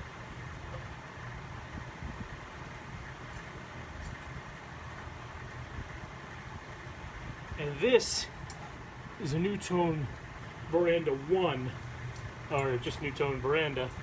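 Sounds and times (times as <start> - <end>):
ceiling fan motor hum: 0.0 - 14.0.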